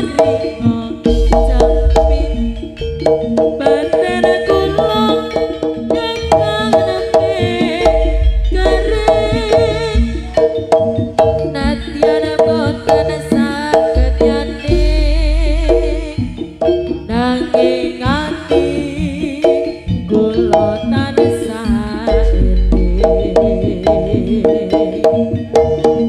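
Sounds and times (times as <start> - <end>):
drums: 0.0 - 26.0
pitched percussion: 0.0 - 26.0
wavering high melody: 0.0 - 26.0
deep long booms: 7.9 - 10.2.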